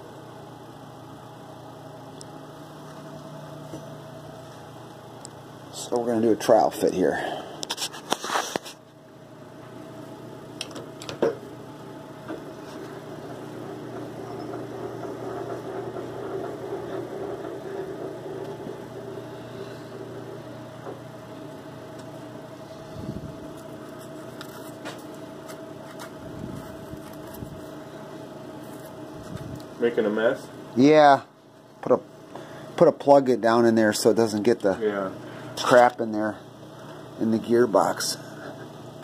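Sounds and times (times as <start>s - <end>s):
machine cutting metal: 13.2s - 20.1s.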